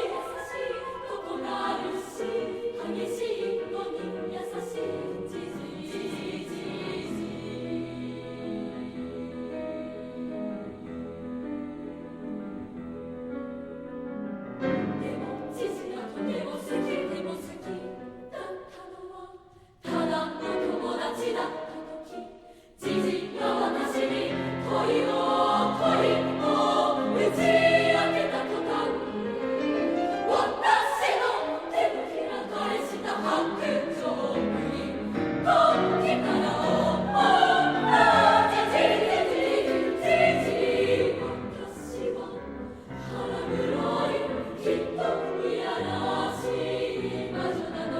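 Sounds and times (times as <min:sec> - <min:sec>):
girls' choir singing: 0:00.0 - 0:12.8, 0:14.6 - 0:47.9
piano accompaniment: 0:22.9 - 0:47.9.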